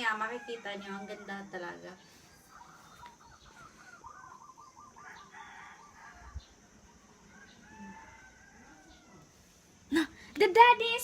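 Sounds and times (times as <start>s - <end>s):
rooster crowing: 0.0s - 9.4s.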